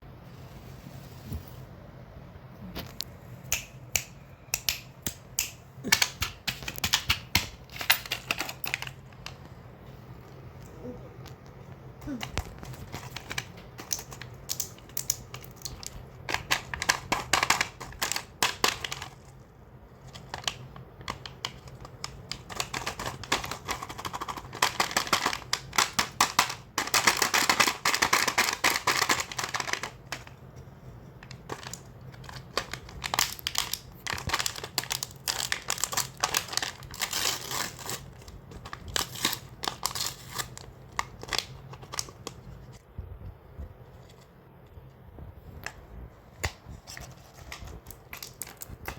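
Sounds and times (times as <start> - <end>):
plastic wrappers crinkling and tearing: 5.8 - 9.5, 12.1 - 19.4, 20.0 - 30.4, 31.2 - 42.8, 46.8 - 48.9.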